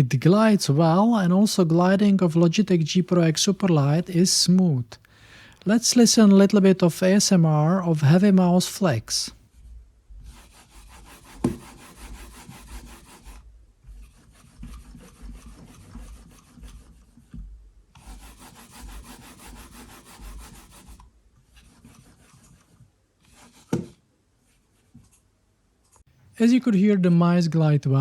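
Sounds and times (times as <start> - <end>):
mouse scraping on cloth pad: 10.2 - 17.1, 18.0 - 23.8.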